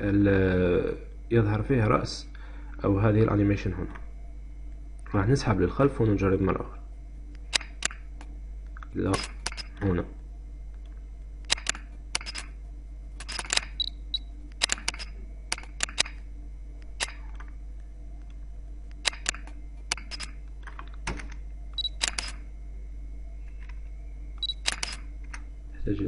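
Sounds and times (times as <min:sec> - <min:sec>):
camera shutter clicks: 0:09.1 - 0:09.7, 0:11.5 - 0:12.5, 0:13.2 - 0:13.8, 0:14.6 - 0:16.2, 0:21.9 - 0:22.4, 0:24.4 - 0:25.0.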